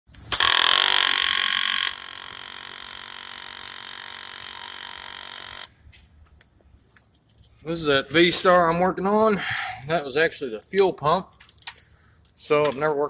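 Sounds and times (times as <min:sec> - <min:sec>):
fuel pump whining: 0:00.2 - 0:05.8.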